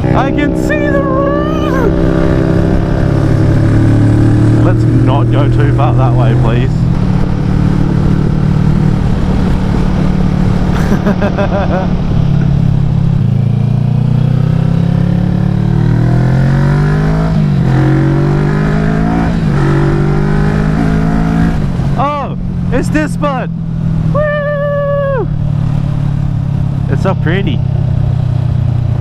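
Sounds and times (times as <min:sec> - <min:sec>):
wind rumble on microphone: 0:00.0 - 0:14.2
motorcycle engine running: 0:00.0 - 0:29.0.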